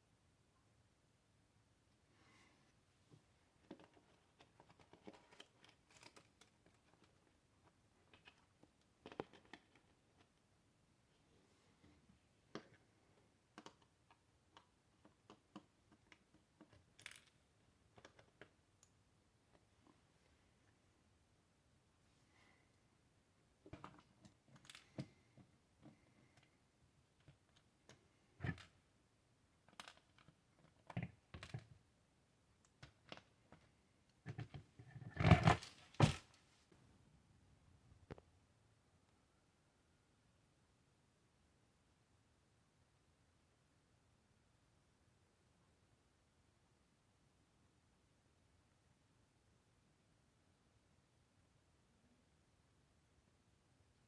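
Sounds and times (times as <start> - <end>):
clicks and knocks of small parts: 3.6 - 10.4, 13.5 - 19.6, 23.7 - 26.5, 29.6 - 31.8.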